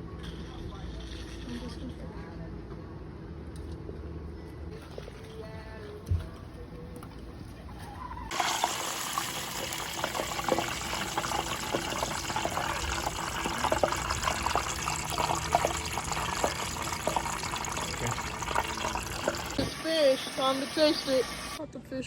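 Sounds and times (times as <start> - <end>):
fish deep-frying in oil: 8.3 - 21.6.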